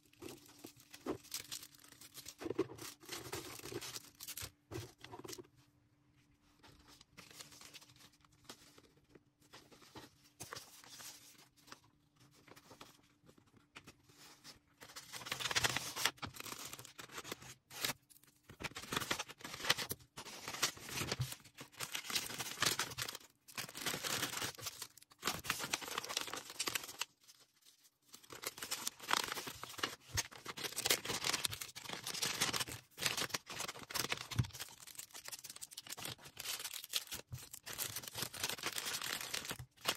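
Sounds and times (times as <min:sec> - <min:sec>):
packaging rustling and crinkling: 0:00.0 - 0:05.5, 0:06.8 - 0:39.9
packaging tearing: 0:28.2 - 0:39.9.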